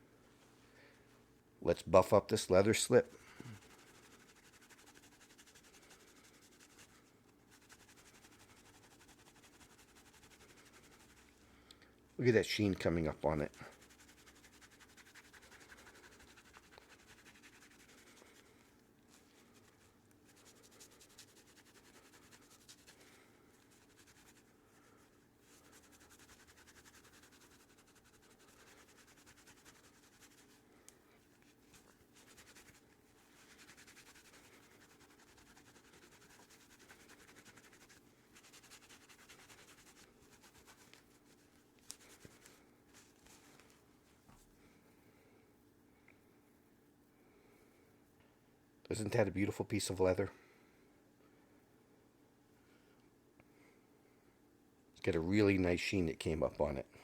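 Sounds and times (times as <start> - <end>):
cloth rubbing leather: 3.5 - 11.4, 13.5 - 43.8.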